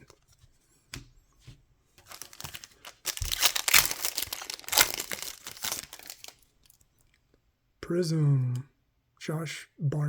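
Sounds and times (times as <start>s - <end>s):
plastic wrapper tearing and crinkling: 2.0s - 6.8s.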